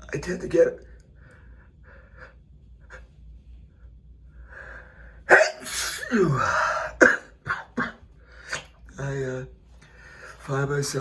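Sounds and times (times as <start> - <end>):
man sneezing with a cry: 5.3 - 8.0.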